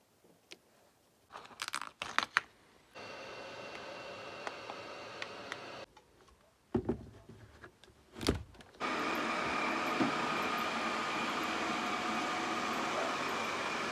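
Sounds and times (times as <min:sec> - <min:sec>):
robot vacuum motor whine: 0:03.0 - 0:05.9, 0:08.8 - 0:13.9.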